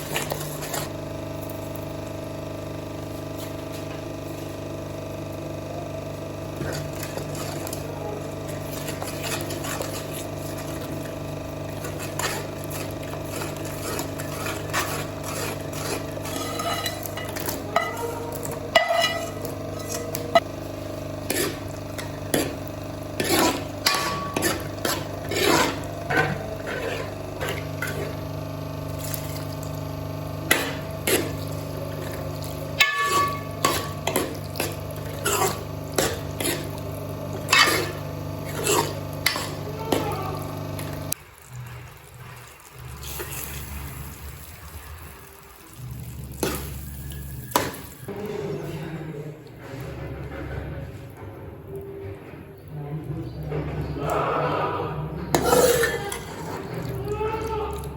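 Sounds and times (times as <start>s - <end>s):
steady low hum: 0.0s - 42.2s
spoon scraping in a cooking pan: 6.6s - 20.5s, 21.1s - 28.2s, 30.5s - 41.0s.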